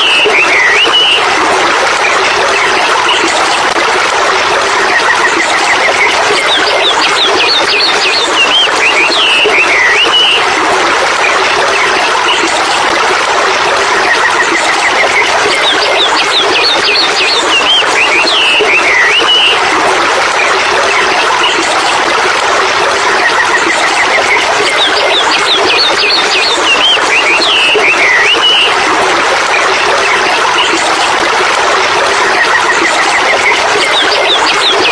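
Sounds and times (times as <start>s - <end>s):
bird chirps and whistles: 0.0s - 1.2s, 5.9s - 10.4s, 15.1s - 19.6s, 24.1s - 28.8s.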